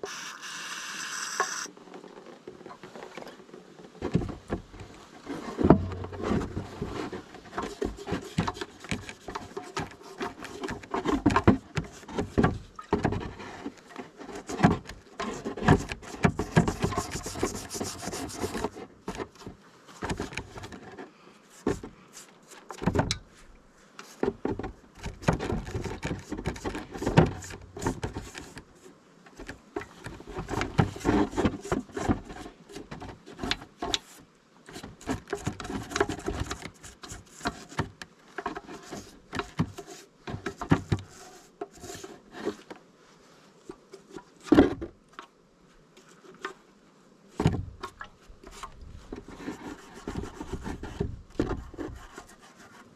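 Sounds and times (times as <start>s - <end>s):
hissing: 0.0s - 1.7s
tools scraping against parts: 0.0s - 1.7s.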